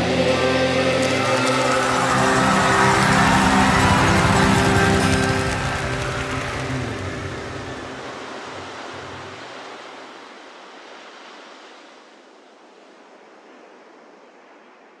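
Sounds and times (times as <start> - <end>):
low notes of a song: 0.0 - 9.4
ocean surf washing in: 0.0 - 15.0.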